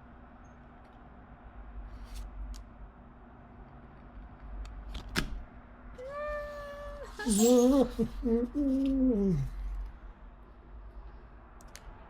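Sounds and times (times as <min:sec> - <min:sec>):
person humming: 0:06.0 - 0:09.7.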